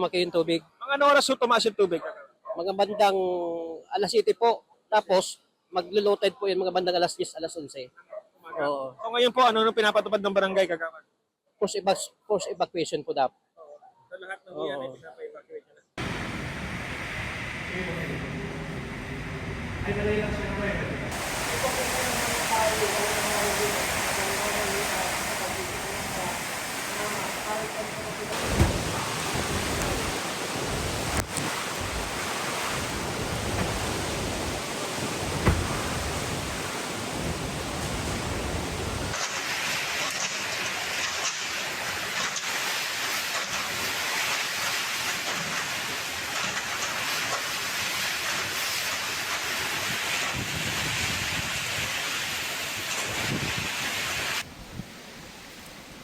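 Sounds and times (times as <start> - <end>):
wind buffeting microphone: 16.0 - 39.1, 49.8 - 52.0, 53.1 - 55.4
wind and rain rushing: 16.0 - 56.0.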